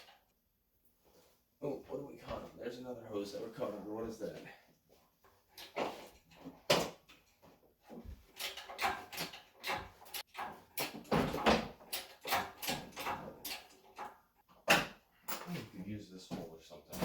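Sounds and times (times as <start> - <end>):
clunks and rattles of engine parts: 5.6 - 15.5.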